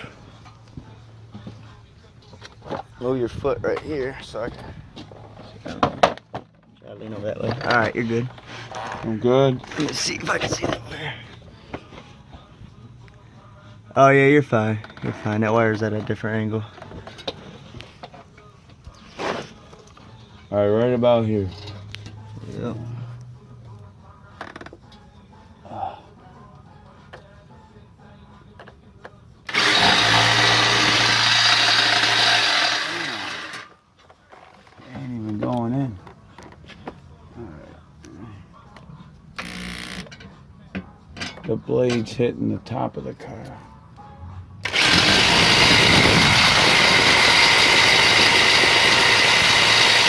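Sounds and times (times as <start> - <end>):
power saw running: 29.5 - 33.7, 44.6 - 50.0.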